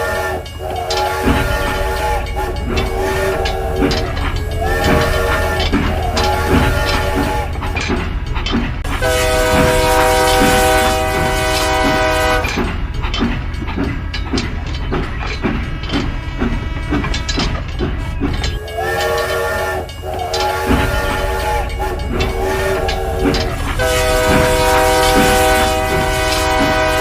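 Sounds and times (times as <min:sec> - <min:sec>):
train horn: 0:00.0 - 0:07.8, 0:08.9 - 0:12.6, 0:15.6 - 0:27.0
wheels clacking over rail joints: 0:00.0 - 0:27.0
low rumble: 0:01.2 - 0:18.7.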